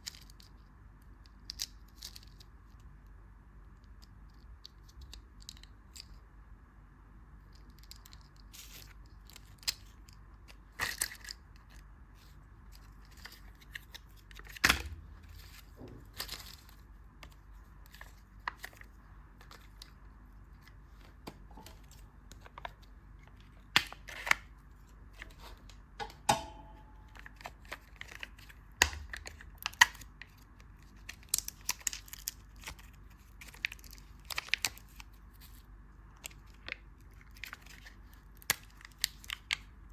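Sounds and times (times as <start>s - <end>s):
candy wrappers crinkling and tearing: 0.0s - 2.9s, 7.4s - 25.4s, 27.0s - 39.9s
wrapper snaps: 27.0s - 35.2s.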